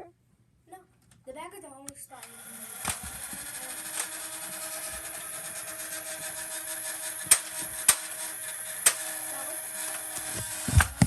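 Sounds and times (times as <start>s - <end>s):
sharp plastic clicks: 2.2s - 4.3s, 7.2s - 9.2s.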